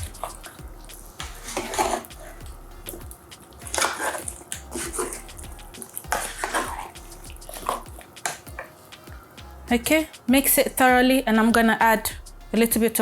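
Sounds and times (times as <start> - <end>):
spoon stirring thick sauce: 0.0 - 8.8
spoon scraping and clinking pot: 3.6 - 8.8.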